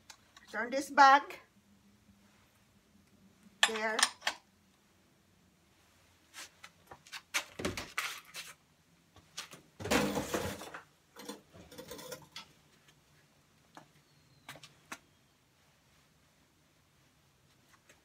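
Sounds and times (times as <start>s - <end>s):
metallic clicks and knocks: 3.6s - 4.4s.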